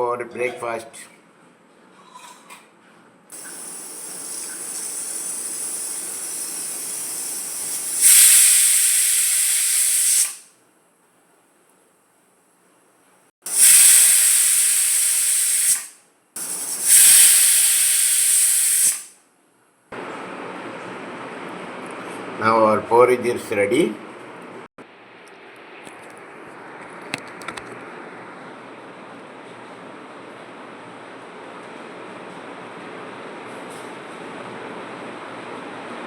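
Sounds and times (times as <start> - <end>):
pressure cooker whistling: 3.4 - 10.5, 13.5 - 19.2
steam hissing: 3.4 - 10.5, 13.5 - 19.2.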